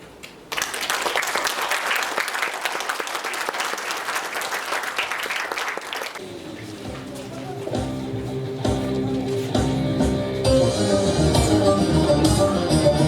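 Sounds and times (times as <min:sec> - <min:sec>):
audience applauding: 0:00.5 - 0:06.2.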